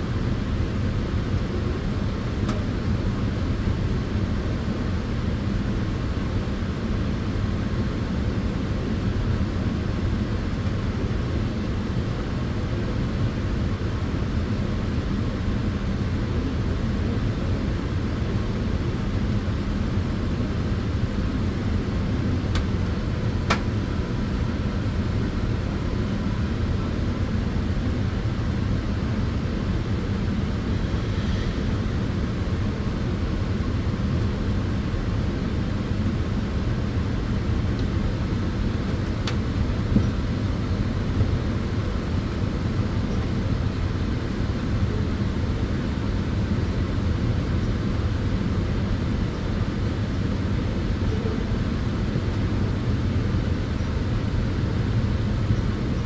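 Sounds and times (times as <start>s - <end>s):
cooling fans rumbling: 0.0s - 56.0s
faint hum: 15.6s - 56.0s.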